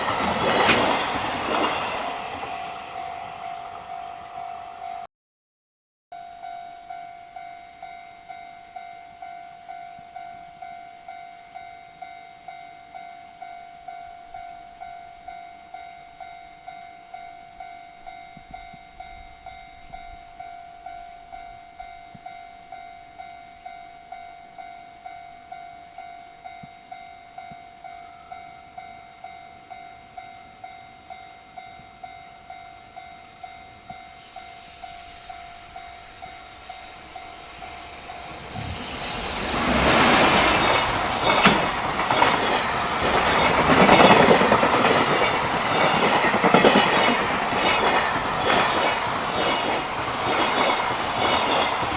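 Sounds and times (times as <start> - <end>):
train rushing: 0.0 - 4.9, 33.4 - 51.9.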